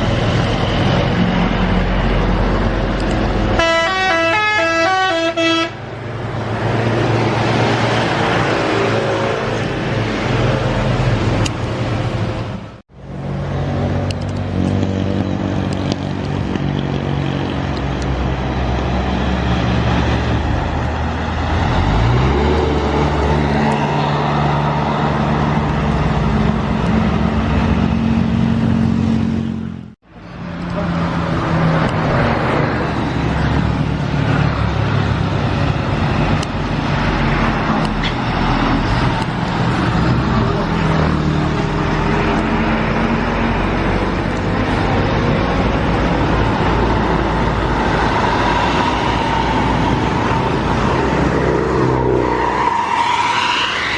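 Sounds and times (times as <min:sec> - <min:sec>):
bus engines running under load: 0:00.0 - 0:53.9
road noise: 0:00.0 - 0:53.9.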